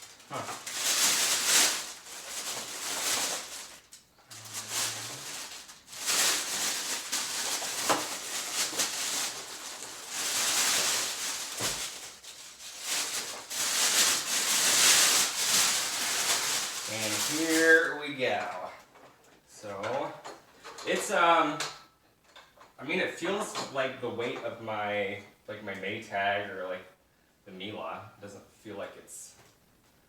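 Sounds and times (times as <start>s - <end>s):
plastic packaging crinkling: 0.0s - 17.9s.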